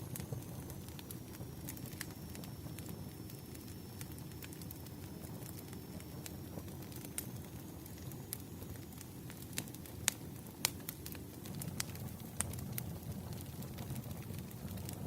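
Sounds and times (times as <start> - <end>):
wood fire crackling: 0.0 - 15.0
burning logs rustling: 4.1 - 15.0.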